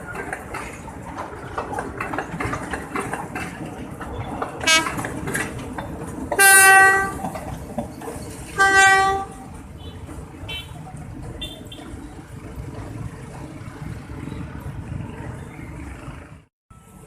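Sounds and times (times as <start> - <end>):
train wheels clacking over rail joints: 0.0 - 13.6
train horn: 4.6 - 5.0, 6.4 - 7.3, 8.6 - 9.4.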